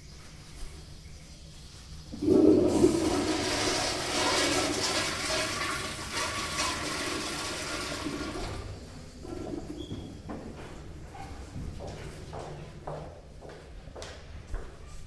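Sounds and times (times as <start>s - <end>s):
toilet flushing: 2.1s - 9.7s.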